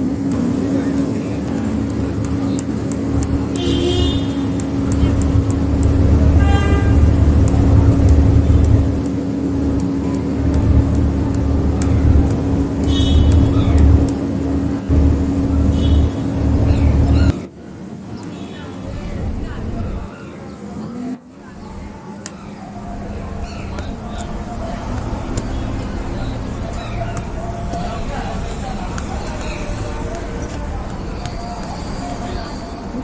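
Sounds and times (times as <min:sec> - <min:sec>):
motor vehicle running: 0:00.0 - 0:17.5, 0:22.8 - 0:33.0
horn toots: 0:06.3 - 0:07.2, 0:12.8 - 0:13.6.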